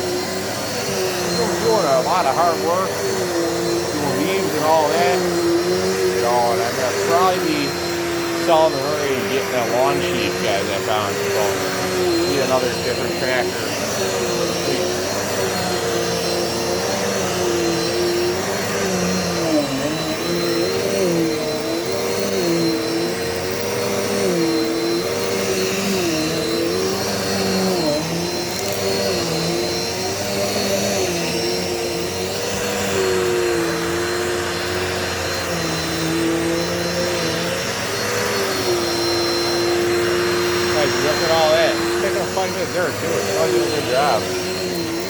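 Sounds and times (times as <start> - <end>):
vacuum cleaner running on carpet: 0.0 - 45.0.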